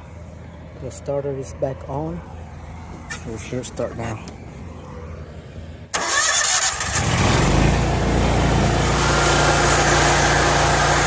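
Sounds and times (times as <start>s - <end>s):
mower engine running: 6.0s - 11.0s.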